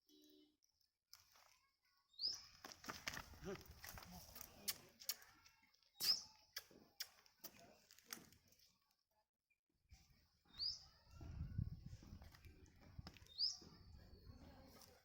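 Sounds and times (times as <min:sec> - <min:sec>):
bird chirps: 0:02.1 - 0:02.5, 0:06.0 - 0:06.4, 0:10.5 - 0:11.2, 0:13.2 - 0:14.4.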